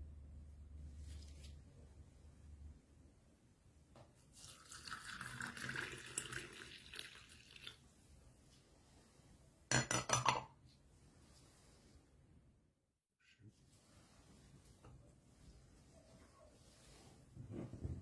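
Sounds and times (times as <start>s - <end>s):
dishes rattling: 9.7s - 10.5s.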